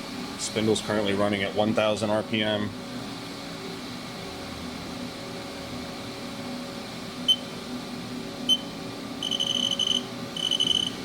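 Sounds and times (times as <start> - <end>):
machine spindle hum: 0.0 - 11.0
short high beeps: 9.2 - 11.0.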